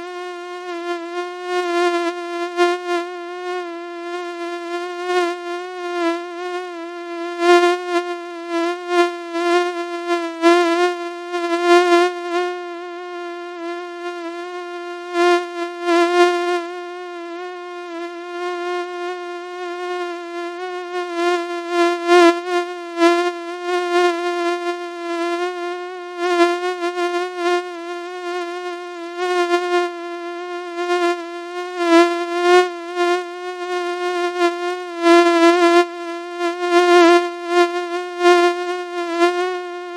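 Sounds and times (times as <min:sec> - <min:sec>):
mosquito-like whining buzz: 0:00.0 - 0:39.9.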